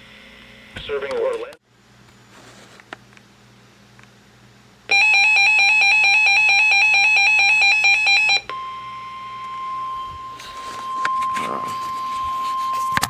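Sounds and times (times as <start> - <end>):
harsh buzzing alarm tone: 4.9 - 13.0
steady high tone: 7.7 - 13.0.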